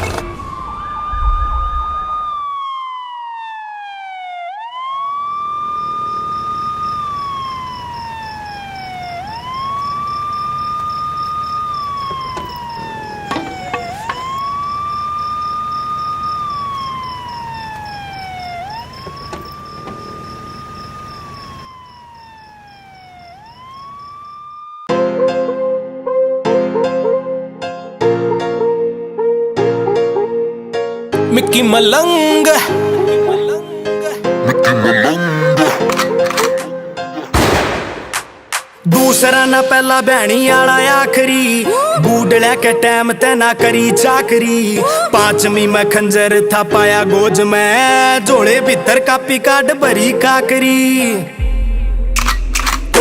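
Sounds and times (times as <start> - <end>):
siren wailing: 0.0 - 24.9, 34.2 - 37.4
keyboard music: 24.9 - 37.6, 38.2 - 53.0.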